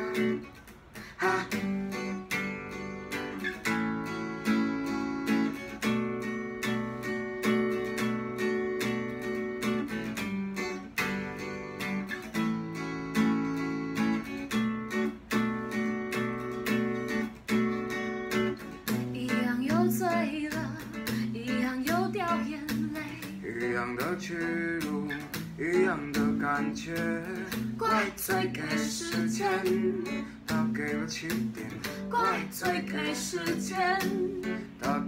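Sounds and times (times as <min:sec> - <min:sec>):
acoustic guitar strumming: 0:00.0 - 0:35.0.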